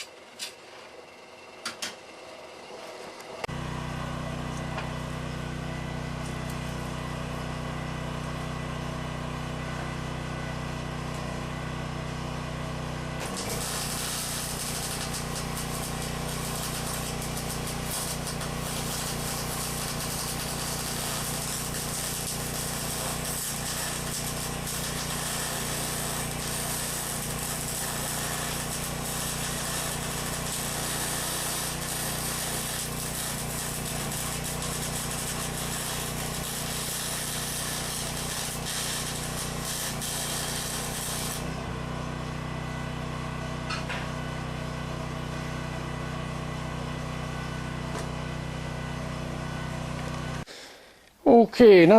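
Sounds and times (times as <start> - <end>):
welder humming: 1.6 - 51.2
welding arc crackling: 13.2 - 41.7.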